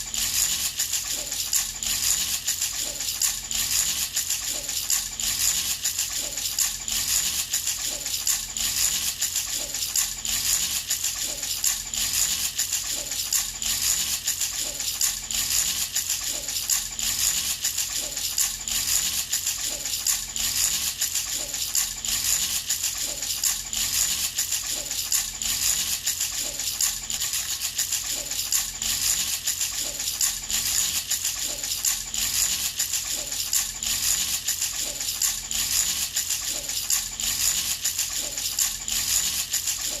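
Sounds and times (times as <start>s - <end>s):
baby's rattle shaken: 0.0s - 40.0s.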